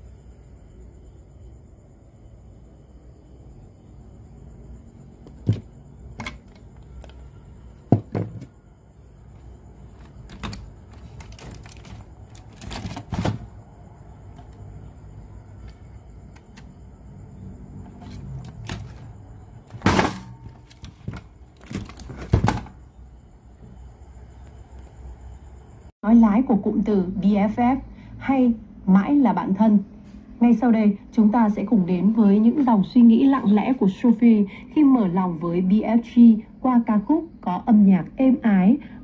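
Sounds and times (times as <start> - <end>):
cassette radio being handled: 9.9 - 13.4.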